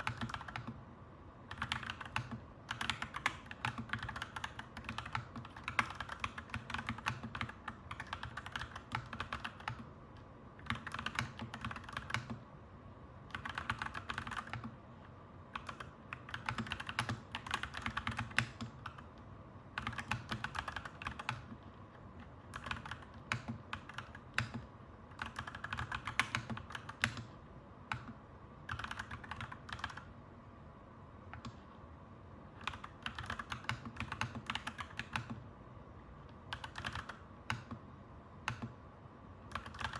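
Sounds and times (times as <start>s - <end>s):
mechanical keyboard typing: 0.0s - 0.8s, 1.4s - 12.5s, 13.2s - 14.8s, 15.5s - 30.1s, 32.5s - 35.4s, 36.2s - 37.8s, 38.4s - 38.8s, 39.4s - 39.9s.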